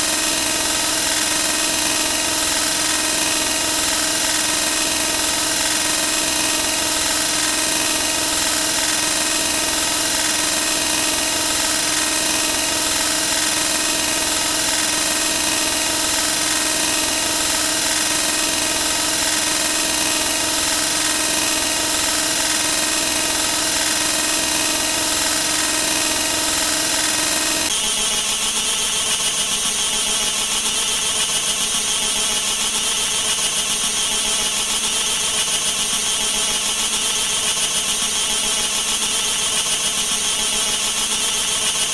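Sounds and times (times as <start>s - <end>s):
droning electronic tones: 5.2s - 27.7s.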